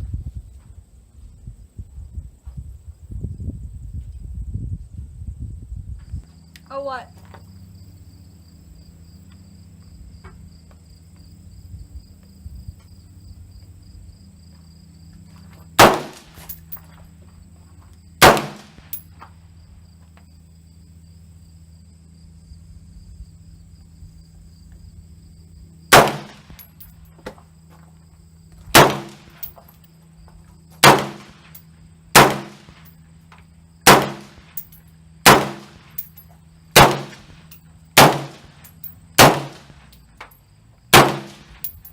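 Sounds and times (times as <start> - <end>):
insects trilling: 6.2 - 15.7, 18.9 - 39.2
rifle shots: 15.8 - 16.5, 18.2 - 19.0, 25.9 - 26.6, 28.7 - 29.5, 30.8 - 31.6, 32.2 - 32.8, 33.8 - 36.0, 36.8 - 38.6, 39.2 - 39.8, 40.9 - 41.7.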